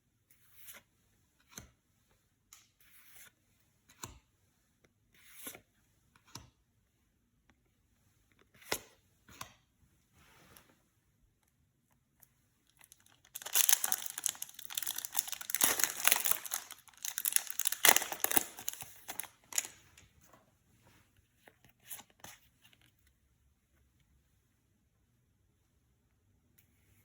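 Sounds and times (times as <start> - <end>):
foil wrapper crinkling and tearing: 12.8 - 19.8.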